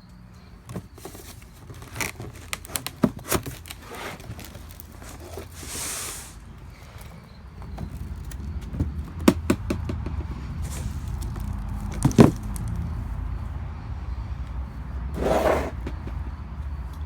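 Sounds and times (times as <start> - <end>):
rustle: 1.0 - 6.4, 10.6 - 12.7.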